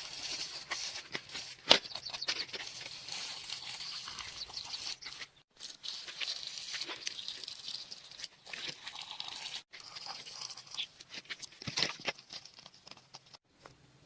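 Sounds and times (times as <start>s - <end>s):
crunching scraping and tearing: 0.0s - 7.5s, 9.8s - 13.4s.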